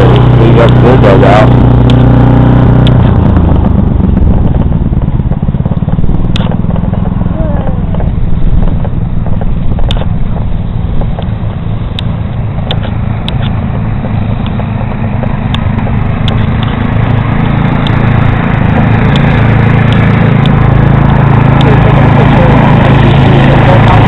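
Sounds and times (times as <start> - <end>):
engine droning: 0.0 - 24.0
sharp clicks: 18.8 - 20.6.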